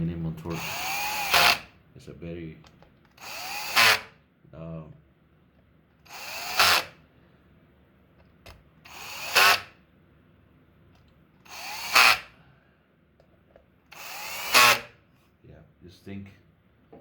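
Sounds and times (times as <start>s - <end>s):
screw gun driving screws: 0.5s - 1.7s, 3.1s - 4.1s, 6.1s - 7.0s, 8.9s - 9.7s, 11.4s - 12.3s, 13.9s - 14.9s.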